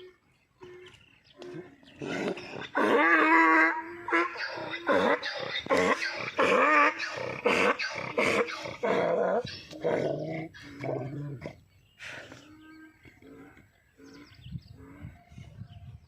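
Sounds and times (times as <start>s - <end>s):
donkey braying: 0.0s - 11.7s.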